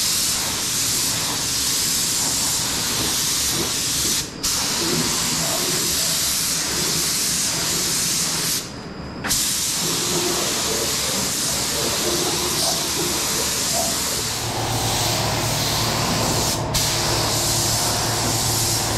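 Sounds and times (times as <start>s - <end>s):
paint spray gun hissing: 9.3s - 18.9s.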